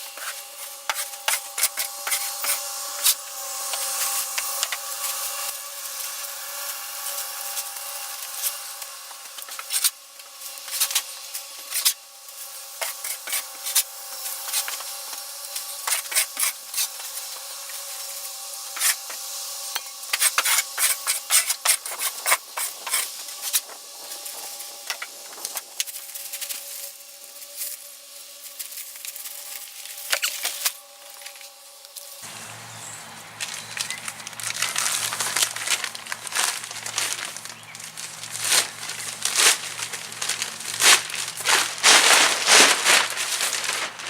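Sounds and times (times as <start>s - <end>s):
tool scraping bedding on wood floor: 0.1s - 5.2s, 15.8s - 17.1s, 18.8s - 19.2s, 20.1s - 25.6s
sharp scrapes and knocks: 0.1s - 5.5s, 9.3s - 12.0s, 12.8s - 17.3s, 18.7s - 19.2s, 19.8s - 27.8s, 33.4s - 44.0s.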